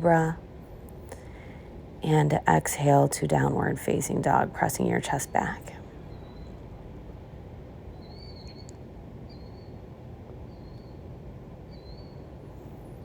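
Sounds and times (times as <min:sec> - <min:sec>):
outdoor air hiss: 0:00.0 - 0:13.0.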